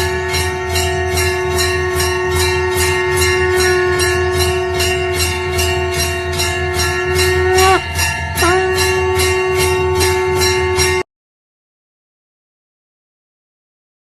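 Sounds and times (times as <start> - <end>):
conch shell blown: 0.0 - 11.1
temple bell ringing rapidly: 0.0 - 11.1.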